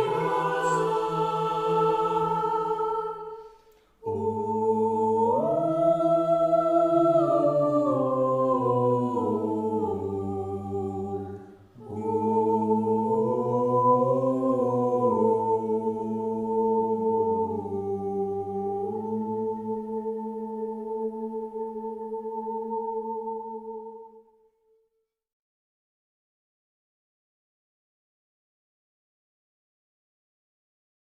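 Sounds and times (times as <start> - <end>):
choir singing a cappella: 0.0 - 24.4.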